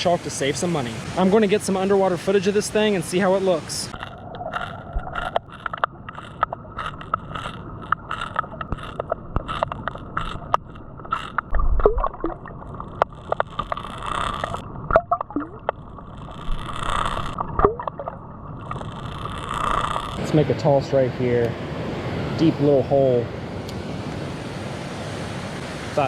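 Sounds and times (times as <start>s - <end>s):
water sloshing and gurgling: 0.0s - 20.2s
bubble blips: 11.5s - 12.6s, 14.4s - 15.7s, 17.4s - 18.2s.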